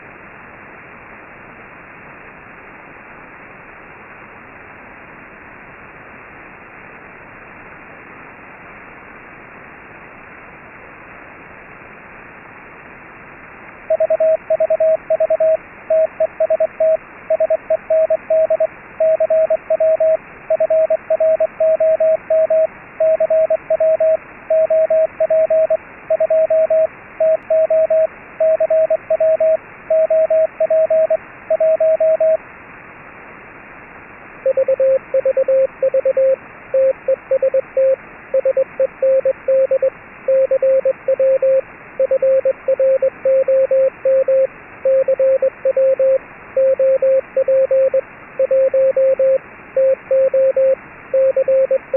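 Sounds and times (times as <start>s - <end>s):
radio static hiss: 0.0s - 51.9s
morse code beeps: 13.9s - 32.4s, 34.5s - 51.9s.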